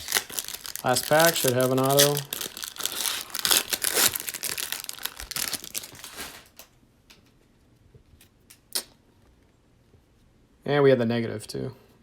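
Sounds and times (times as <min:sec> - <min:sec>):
foil wrapper tearing and crinkling: 0:00.0 - 0:06.7.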